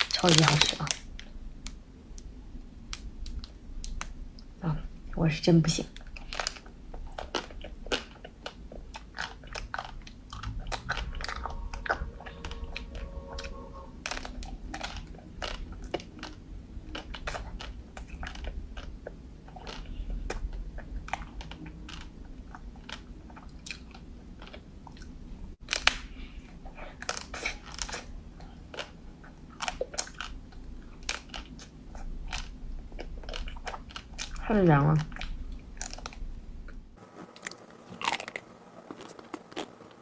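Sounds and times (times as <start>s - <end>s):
crisp coating cracking: 0.0s - 2.2s, 5.9s - 18.9s, 25.6s - 28.1s
biting and chewing ice cream bar: 5.9s - 34.4s, 35.0s - 40.0s.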